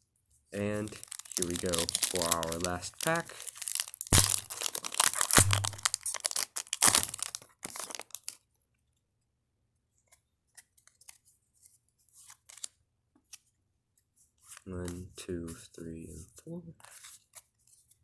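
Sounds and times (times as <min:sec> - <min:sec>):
foil wrapper tearing and crinkling: 0:00.6 - 0:08.4.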